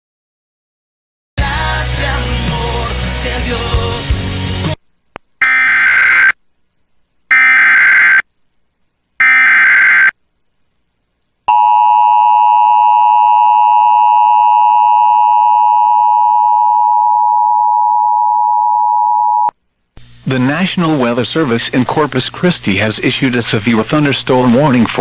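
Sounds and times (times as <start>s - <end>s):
digital data tone bursts: 5.4s - 6.4s, 7.3s - 8.2s, 9.2s - 10.2s.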